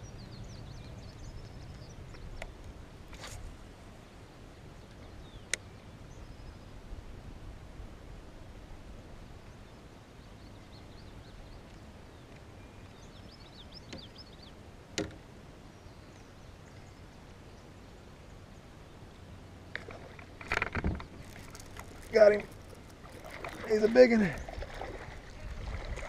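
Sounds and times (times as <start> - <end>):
wind and water rumble: 0.0 - 26.0.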